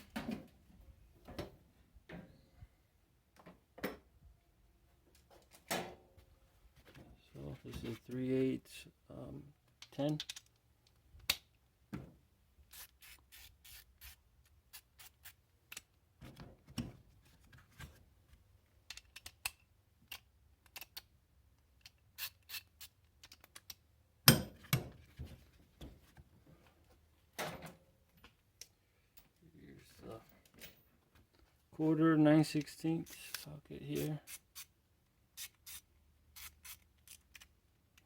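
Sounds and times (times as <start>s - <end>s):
metal sockets clicking and clinking: 9.8s - 10.6s.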